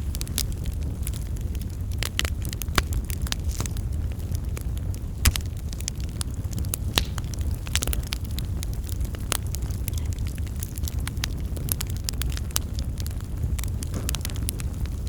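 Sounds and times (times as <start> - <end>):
fire crackling in fireplace: 0.0 - 15.0.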